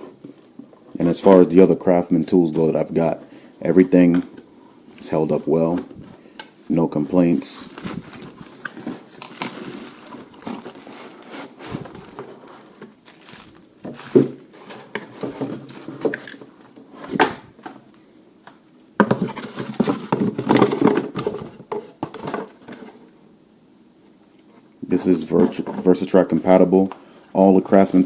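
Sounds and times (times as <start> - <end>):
packaging rustling: 7.6 - 17.4.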